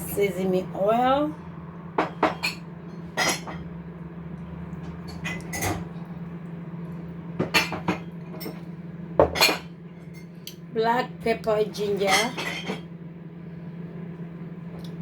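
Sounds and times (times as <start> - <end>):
low hum: 0.0 - 9.2
dishes and utensils clinking: 2.0 - 3.7, 5.1 - 5.9, 7.4 - 10.4, 12.0 - 12.9.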